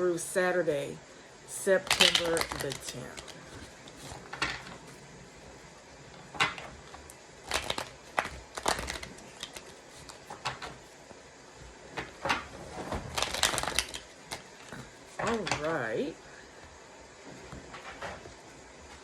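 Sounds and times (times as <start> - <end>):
cards being shuffled: 1.8 - 5.0, 6.4 - 10.9, 12.0 - 15.8.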